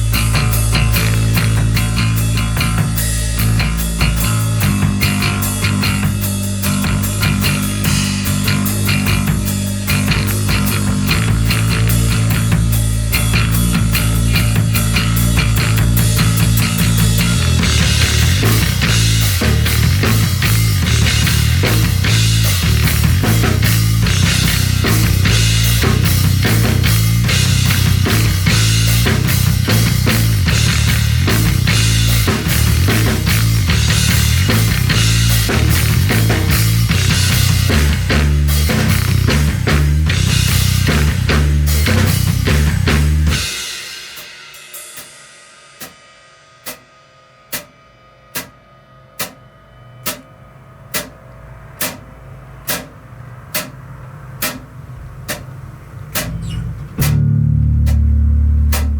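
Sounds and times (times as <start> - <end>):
bass guitar rock riff: 0.0 - 44.1, 56.1 - 58.9
drum kit: 0.0 - 58.9
sharp clicks: 51.8 - 52.0, 52.7 - 52.9, 53.5 - 53.8, 54.4 - 54.6, 55.3 - 55.5, 56.2 - 58.1.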